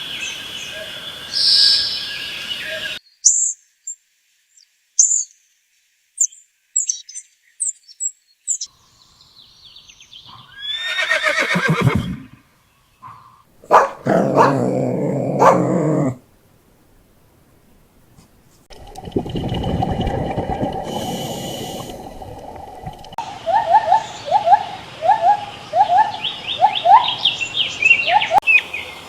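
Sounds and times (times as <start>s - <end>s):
horse whinnying: 10.5s - 12.4s.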